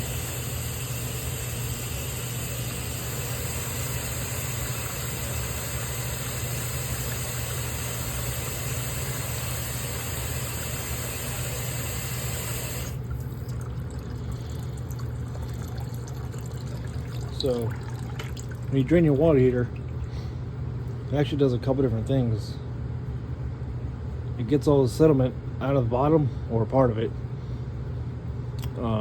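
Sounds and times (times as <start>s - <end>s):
water rushing into bucket: 0.0s - 20.2s.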